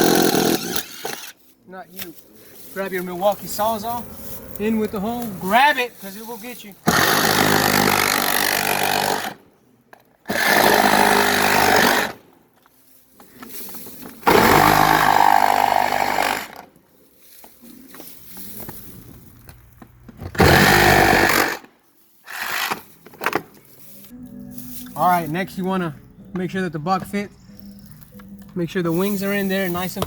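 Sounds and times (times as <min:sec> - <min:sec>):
reciprocating saw cutting: 0:00.0 - 0:01.4, 0:06.8 - 0:09.4, 0:14.2 - 0:16.6, 0:20.4 - 0:22.9.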